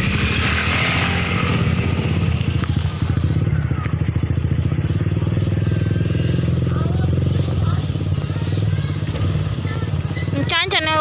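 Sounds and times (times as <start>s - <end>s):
vehicle rushing past: 0.0s - 3.6s
engine idling: 0.0s - 11.0s.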